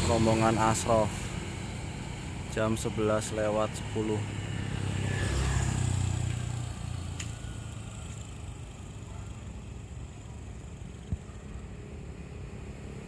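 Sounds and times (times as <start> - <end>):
bus engine rumbling: 0.0 - 2.7.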